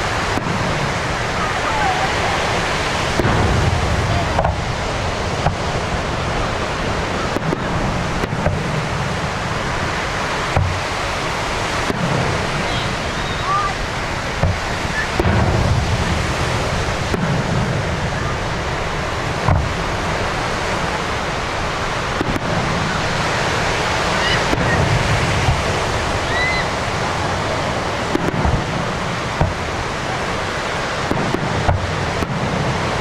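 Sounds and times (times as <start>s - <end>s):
distant firework booms: 0.0s - 33.0s
steady rushing noise: 0.0s - 33.0s
faint rising firework whistles: 11.8s - 18.4s, 22.2s - 31.8s.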